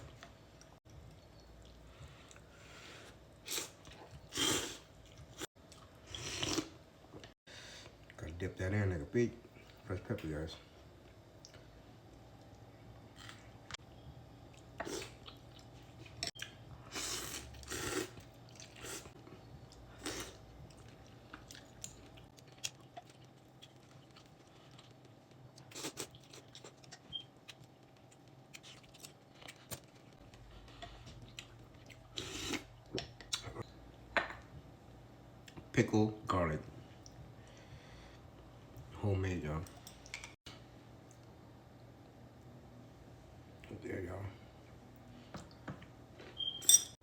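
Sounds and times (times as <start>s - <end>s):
person chewing food: 14.4s - 33.4s.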